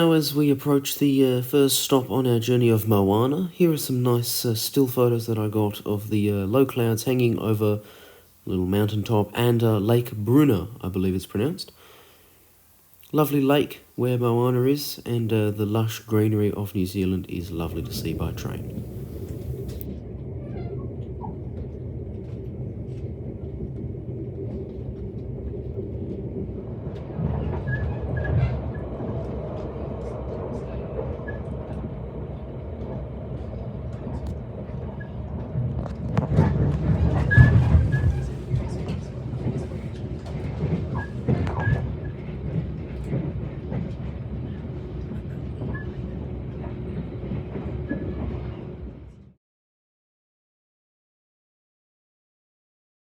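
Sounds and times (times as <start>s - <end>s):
train rumbling on rails: 15.1s - 49.4s
high wheel squeaks: 27.3s - 29.0s, 36.0s - 42.2s.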